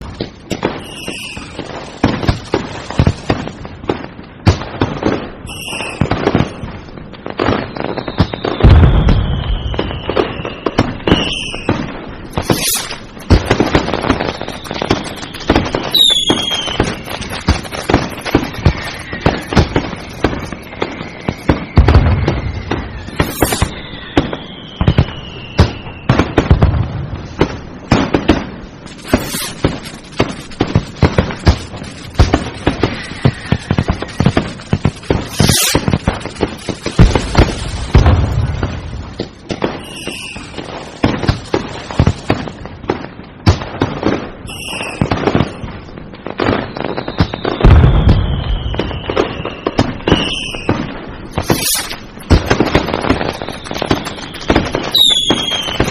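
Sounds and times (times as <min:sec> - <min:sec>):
firecrackers cracking and banging: 0:00.0 - 0:55.9
heavy firework booms: 0:00.0 - 0:55.9
firework whistles falling in pitch: 0:00.5 - 0:02.3, 0:05.4 - 0:06.7, 0:07.4 - 0:26.6, 0:28.9 - 0:29.8, 0:32.6 - 0:36.2, 0:39.6 - 0:40.8, 0:44.4 - 0:45.6, 0:46.4 - 0:55.9.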